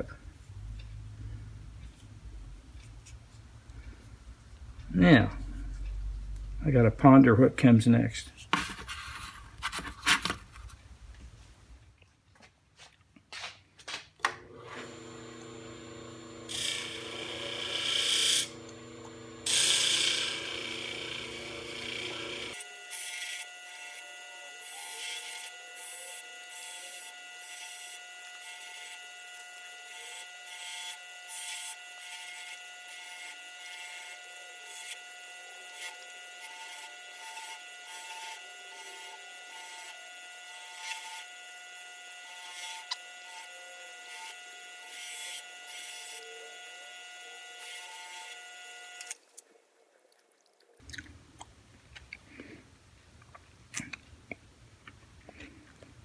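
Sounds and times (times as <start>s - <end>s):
hand file rasping on steel: 19.5s - 41.4s.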